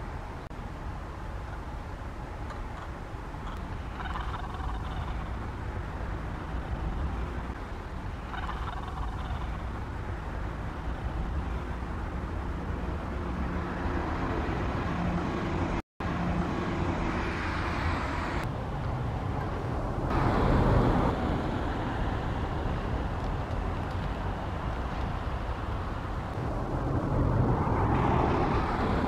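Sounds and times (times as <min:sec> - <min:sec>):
distant road traffic rumble: 0:00.0 - 0:29.0
vehicle passing: 0:02.8 - 0:29.0.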